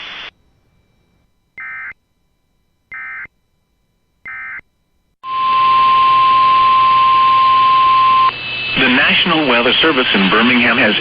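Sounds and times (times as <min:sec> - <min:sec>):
radio hiss: 0:00.0 - 0:00.3, 0:08.2 - 0:11.0.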